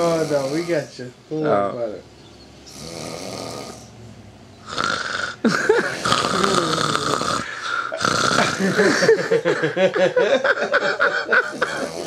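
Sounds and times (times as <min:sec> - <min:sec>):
man snoring: 0:00.0 - 0:00.9, 0:02.7 - 0:03.9, 0:04.6 - 0:09.1, 0:11.3 - 0:12.0.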